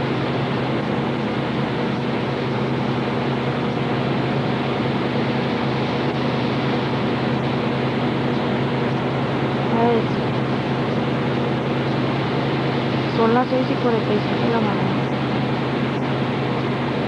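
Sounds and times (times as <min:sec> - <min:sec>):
mechanical hum: 0:00.0 - 0:17.0.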